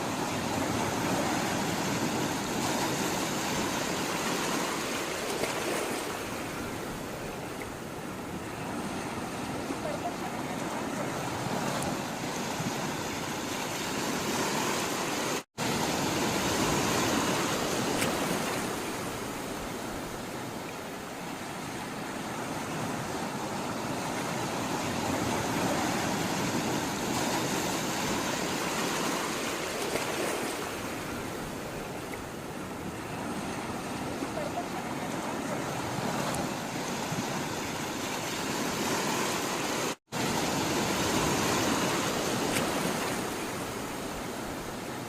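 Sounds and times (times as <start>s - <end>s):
sea water rushing: 0.0s - 45.0s.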